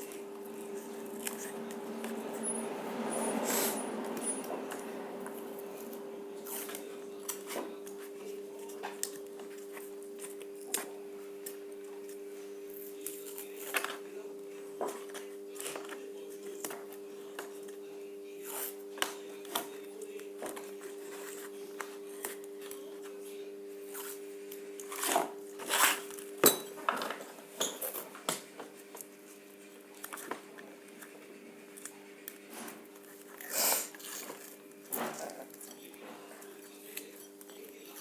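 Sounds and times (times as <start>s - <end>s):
wire and tape handling: 0.0s - 3.0s.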